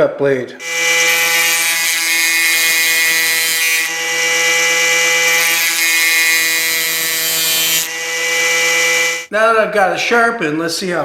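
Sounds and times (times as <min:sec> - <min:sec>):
angle grinder motor whine: 0:00.6 - 0:09.3
drill bit grinding hiss: 0:00.6 - 0:09.3.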